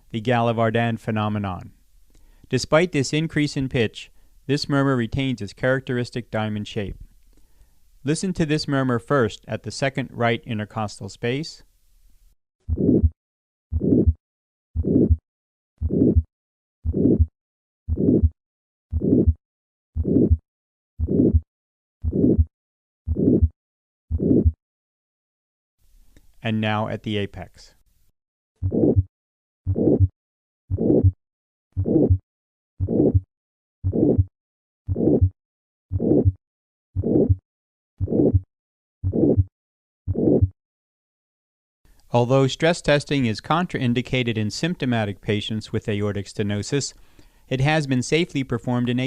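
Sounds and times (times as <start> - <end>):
heartbeat with harsh murmur: 12.7 - 13.2, 13.8 - 14.2, 15.8 - 17.3, 29.7 - 30.1
heart murmur: 12.7 - 14.2, 14.8 - 15.2, 15.8 - 17.3, 17.9 - 19.4, 20.0 - 20.4, 21.0 - 22.5, 23.1 - 24.6, 28.6 - 29.1, 29.7 - 30.1, 30.7 - 31.2, 31.8 - 32.2, 32.8 - 33.3, 33.9 - 34.3, 34.9 - 36.4, 37.0 - 37.4, 38.0 - 39.5, 40.1 - 40.5
heart sounds: 12.7 - 14.2, 14.8 - 15.2, 15.8 - 17.3, 17.9 - 19.4, 20.0 - 20.4, 21.0 - 22.5, 23.1 - 24.6, 28.6 - 29.1, 29.7 - 30.1, 30.7 - 31.2, 31.8 - 32.2, 32.8 - 33.3, 33.9 - 34.3, 34.9 - 36.4, 37.0 - 37.4, 38.0 - 39.5, 40.1 - 40.5.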